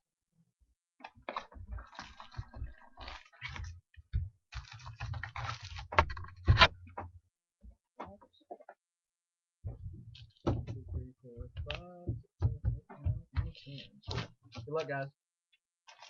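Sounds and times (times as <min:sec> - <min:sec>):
soft thuds: 0:09.6 - 0:14.7.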